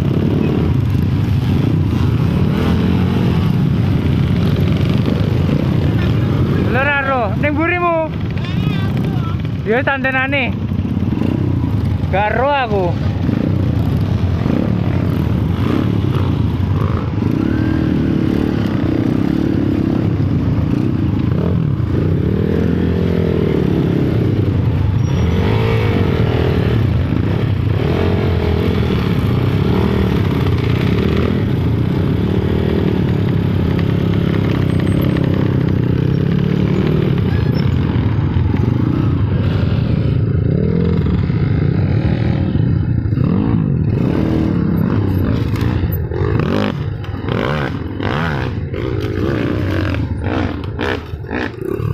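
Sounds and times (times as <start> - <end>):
motorcycle engine revving: 0.0 - 51.9.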